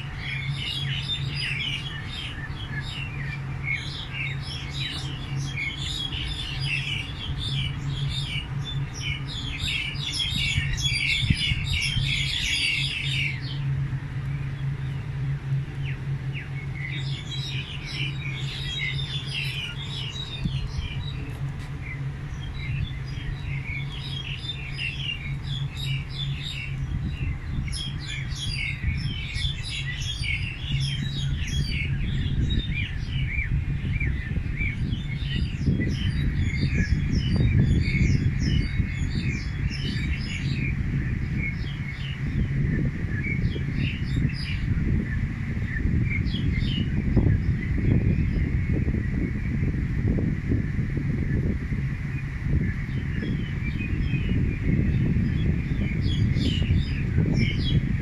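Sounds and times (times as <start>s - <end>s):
small birds chirping: 0.0s - 58.0s
steady low hum: 0.0s - 58.0s.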